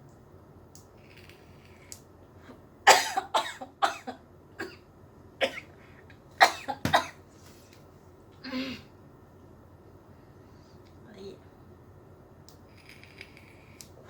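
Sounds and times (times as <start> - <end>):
person coughing: 2.9 - 4.8, 6.4 - 7.2, 8.4 - 8.9.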